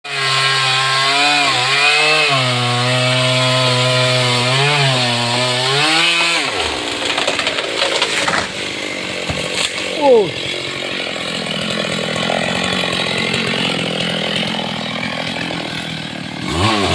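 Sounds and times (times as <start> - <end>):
chainsaw cutting: 0.0 - 16.9
crackling and rustling: 6.6 - 8.6.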